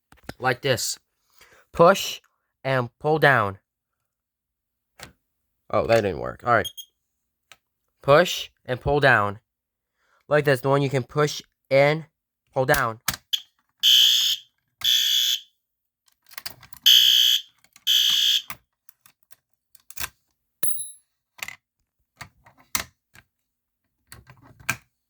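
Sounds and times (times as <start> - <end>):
fire alarm horn blasts: 13.3 - 15.5, 16.8 - 18.5.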